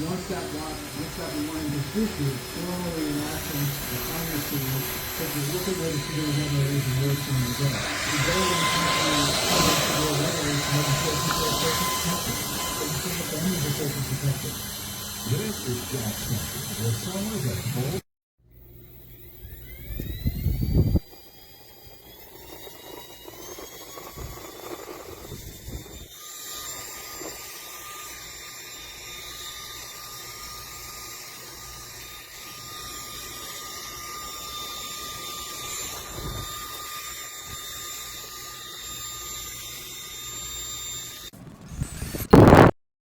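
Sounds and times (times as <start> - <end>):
loud burst of noise: 0.0 - 18.0, 41.4 - 42.8
electric fan motor whirring: 0.0 - 42.7.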